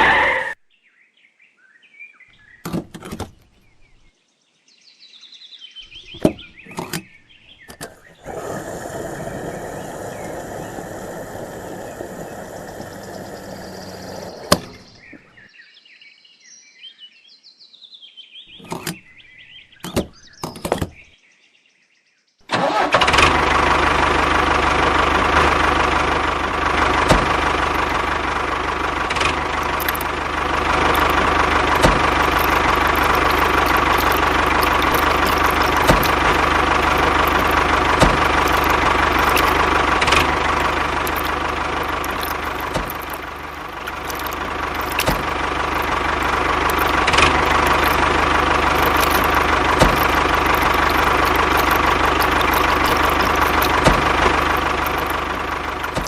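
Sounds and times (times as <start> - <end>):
small engine running: 7.8 - 15.0, 22.6 - 56.0.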